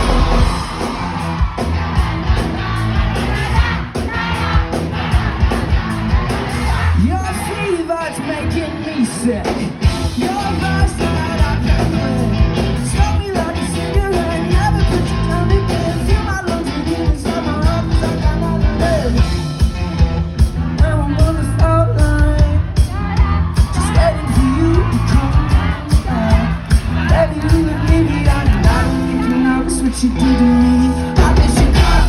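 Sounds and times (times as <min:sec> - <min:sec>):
lead singer's vocal: 0:00.0 - 0:19.5, 0:20.5 - 0:32.0
rock band playing live: 0:00.0 - 0:32.0.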